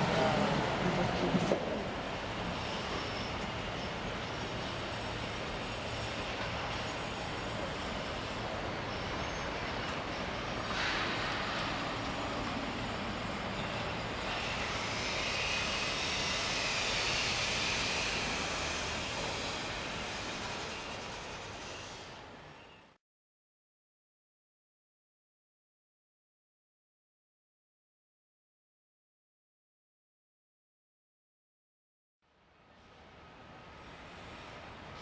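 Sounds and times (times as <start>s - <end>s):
city rumble: 0.0s - 22.4s
train passing: 0.0s - 23.0s, 32.8s - 35.0s.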